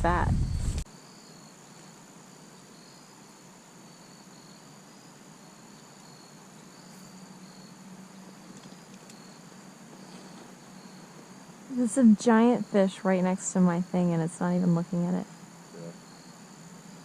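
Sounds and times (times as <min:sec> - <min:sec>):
insect chirps: 0:00.0 - 0:17.0
insects trilling: 0:00.0 - 0:17.0.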